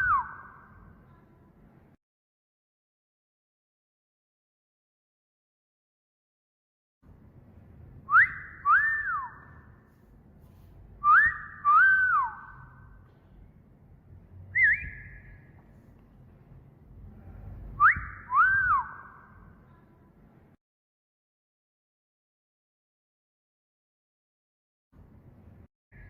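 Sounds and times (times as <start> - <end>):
wolf whistle: 0.0 - 0.7, 8.1 - 9.7, 11.0 - 12.9, 14.5 - 15.5, 17.8 - 19.4.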